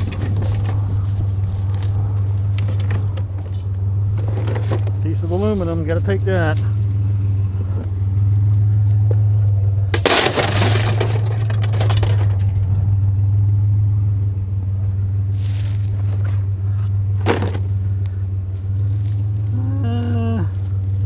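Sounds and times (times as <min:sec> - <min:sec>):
truck engine idling: 0:00.0 - 0:21.0
scrap metal crashing: 0:09.9 - 0:12.7.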